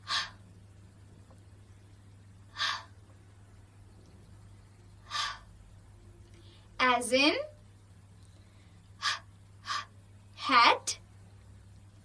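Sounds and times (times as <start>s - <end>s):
woman breathy h sound: 0.0s - 0.4s, 2.5s - 2.9s, 5.0s - 5.5s, 9.0s - 9.9s
faint low hum: 0.0s - 12.0s.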